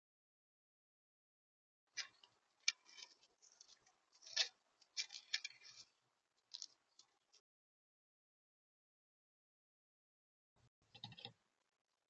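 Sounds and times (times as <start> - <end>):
clicks and scratches at bird feeder: 1.9 - 7.2, 10.9 - 11.4.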